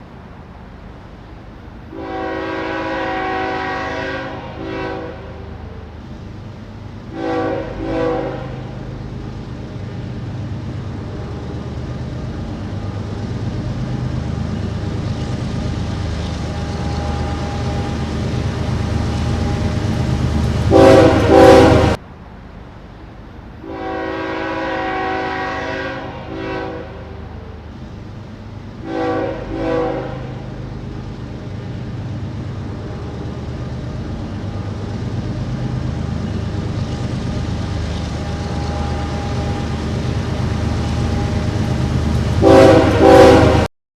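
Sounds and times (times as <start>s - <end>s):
train rumble: 0.0s - 43.7s
locomotive air horn blasts: 1.9s - 5.6s, 7.1s - 8.8s, 20.7s - 22.0s, 23.6s - 27.4s, 28.8s - 30.4s, 42.3s - 43.7s.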